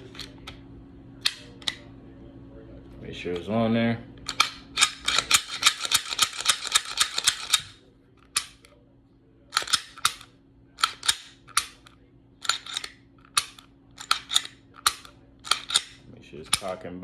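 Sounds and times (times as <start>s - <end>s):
pistol parts clicking: 1.2s - 1.8s, 4.3s - 8.7s, 9.5s - 16.8s.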